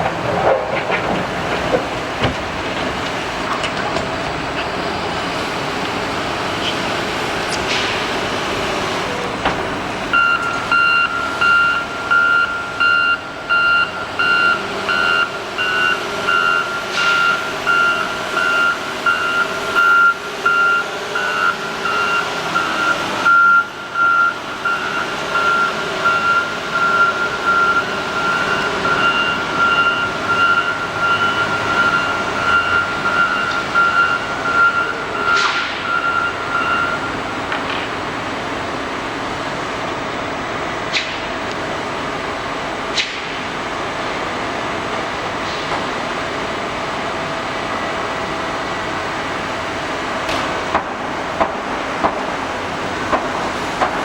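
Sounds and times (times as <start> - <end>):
heavy machine engine running: 0.0 - 54.0
backup alarm beeping: 10.1 - 37.4.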